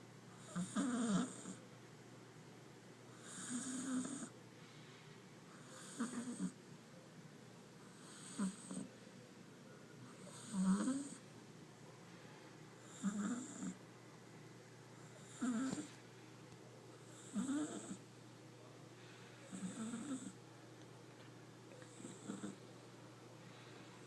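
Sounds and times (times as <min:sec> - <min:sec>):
cat snoring: 0:00.3 - 0:01.6, 0:03.1 - 0:04.4, 0:05.5 - 0:06.6, 0:07.8 - 0:08.9, 0:10.2 - 0:11.2, 0:12.8 - 0:13.8, 0:15.1 - 0:15.9, 0:17.0 - 0:18.0, 0:19.5 - 0:20.4, 0:21.9 - 0:22.6.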